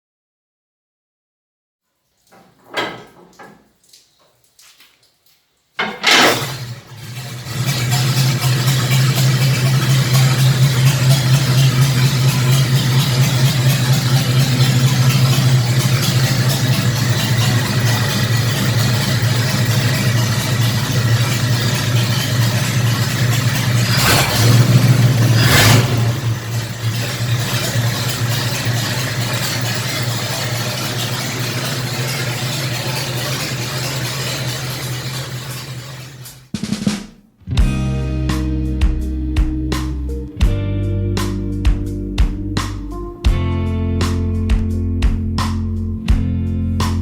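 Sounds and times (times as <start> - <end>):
sharp engine knocks: 2.4 - 3.7, 5.8 - 6.8
truck engine running: 5.8 - 36.5.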